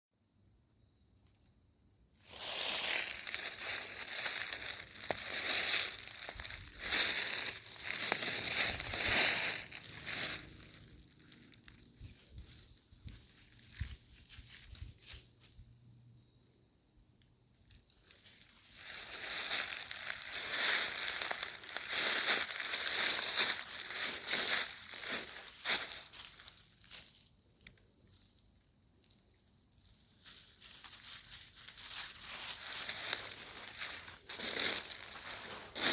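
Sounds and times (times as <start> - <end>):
soft crackling of leaves: 1.1 - 15.8, 17.2 - 35.9
footsteps crunching dry leaves: 2.2 - 15.4, 18.0 - 27.3, 30.2 - 35.9.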